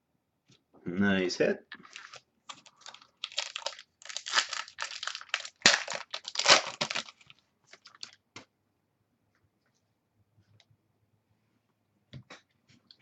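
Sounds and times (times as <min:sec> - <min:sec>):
card packaging crinkling and tearing: 0:01.8 - 0:08.2.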